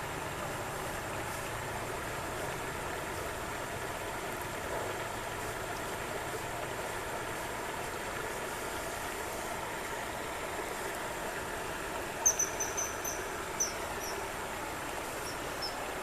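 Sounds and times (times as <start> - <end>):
background hiss: 5.3 - 16.0
bird high sharp calls: 12.2 - 14.2.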